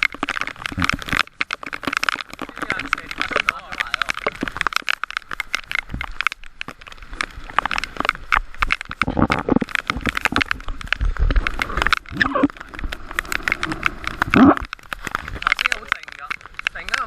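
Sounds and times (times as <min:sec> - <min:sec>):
wind and spray crackling on microphone: 0:00.0 - 0:17.0.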